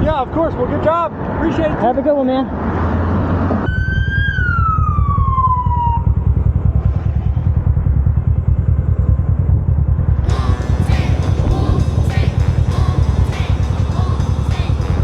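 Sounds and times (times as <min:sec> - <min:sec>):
vehicle engine rumbling: 0:00.0 - 0:15.0
high whining tone: 0:03.6 - 0:15.0.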